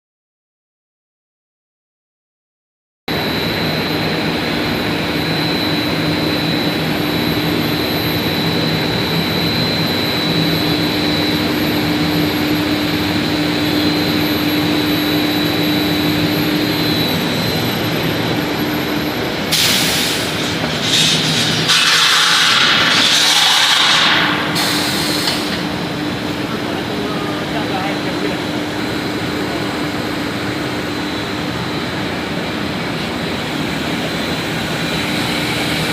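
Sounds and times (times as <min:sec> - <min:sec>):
induction heater whine and hum: 0:03.1 - 0:35.9
loud hiss: 0:19.5 - 0:25.6.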